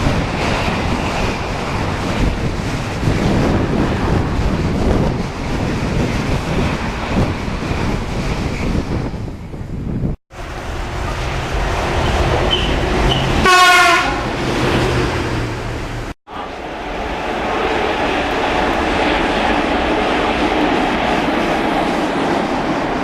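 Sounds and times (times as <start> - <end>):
freight train passing: 0.0 - 23.0
wind buffeting microphone: 0.0 - 23.0
train horn blast: 12.5 - 14.4.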